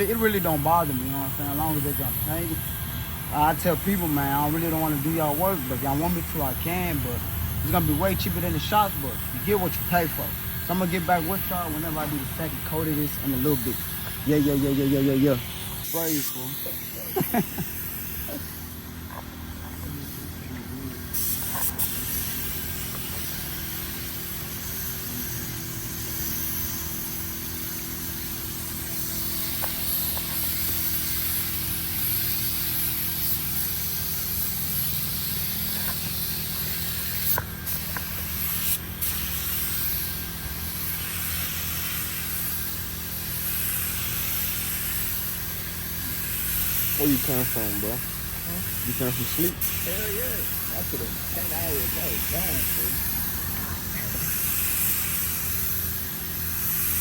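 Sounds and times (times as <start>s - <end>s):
paint spray gun hissing: 0.0s - 57.0s.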